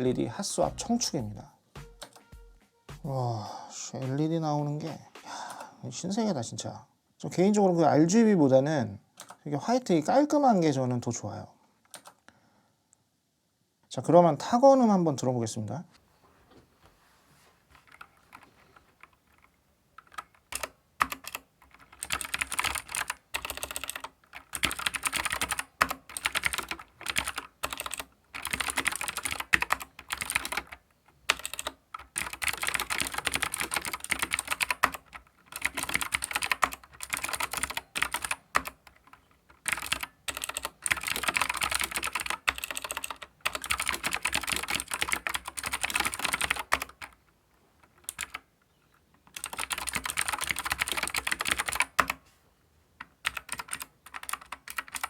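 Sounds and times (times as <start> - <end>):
mechanical keyboard typing: 17.8 - 47.2, 47.8 - 48.5, 49.2 - 52.2, 53.0 - 55.0.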